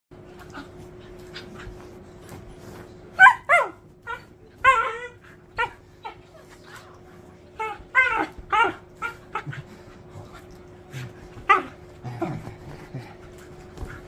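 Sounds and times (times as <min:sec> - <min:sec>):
dog yipping: 0:03.2 - 0:05.8.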